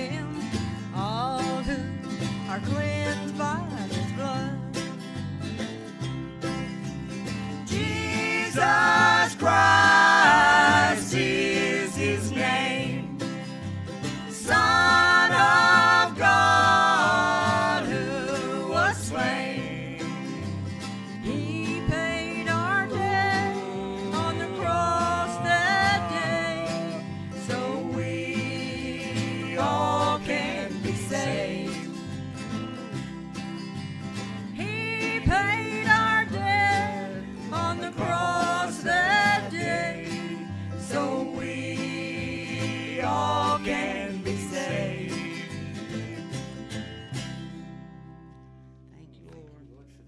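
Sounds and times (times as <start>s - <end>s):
acoustic guitar: 0.0s - 50.0s
instrumental backing: 0.0s - 50.0s
gospel singers holding notes: 7.6s - 32.2s, 34.6s - 46.6s.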